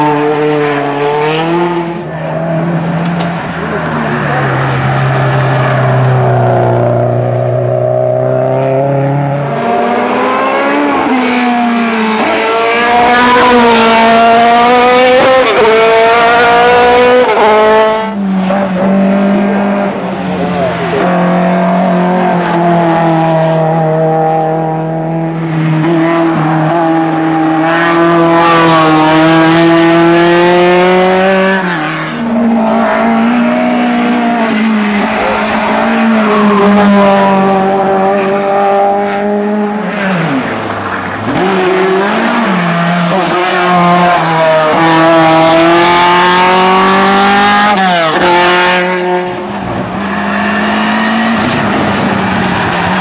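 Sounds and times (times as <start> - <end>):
race car engines revving: 0.0 - 53.0.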